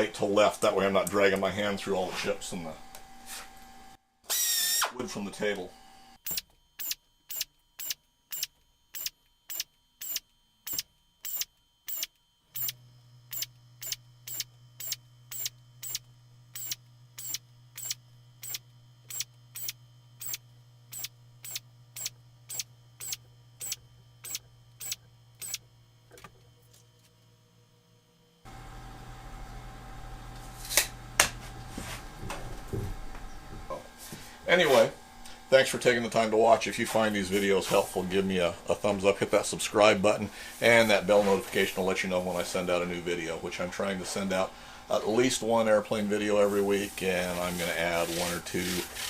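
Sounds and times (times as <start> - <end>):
air drill bursts: 4.3 - 5.0, 6.2 - 25.6.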